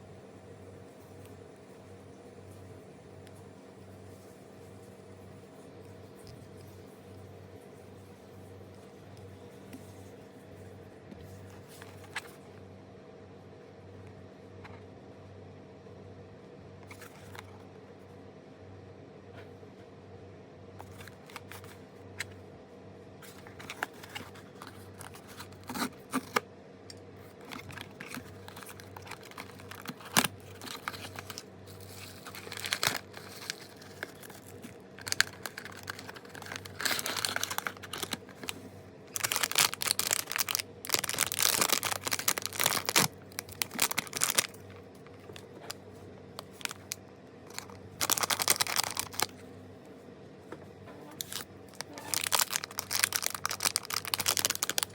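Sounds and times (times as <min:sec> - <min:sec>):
faint steady hum: 0:00.0 - 0:54.9
plastic wrapper crinkling and tearing: 0:20.8 - 0:21.8, 0:23.2 - 0:26.4, 0:27.3 - 0:45.8, 0:46.4 - 0:49.4, 0:51.2 - 0:54.9
packaging clicks and taps: 0:27.4 - 0:31.4, 0:32.0 - 0:38.6, 0:52.1 - 0:54.9.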